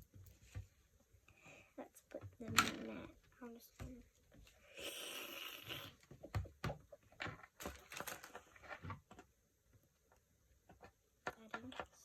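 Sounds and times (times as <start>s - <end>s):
plastic parts clicking and tapping: 2.1s - 4.4s, 6.0s - 12.0s.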